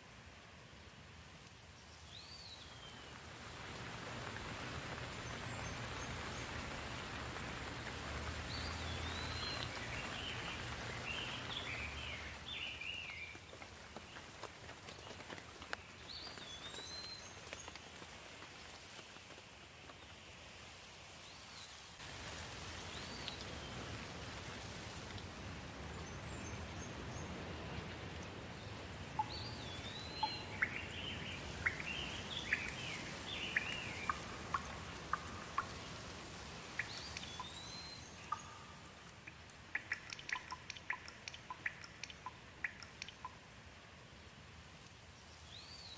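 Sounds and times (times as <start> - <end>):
steady rain: 0.0 - 45.9
small birds chirping: 8.4 - 18.0, 25.9 - 43.4
water drip taps: 29.2 - 32.8, 33.4 - 36.0, 36.7 - 43.4.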